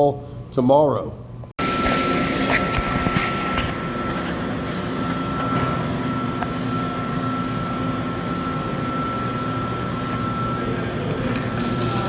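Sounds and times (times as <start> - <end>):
high-pitched whine: 1.6 - 11.7.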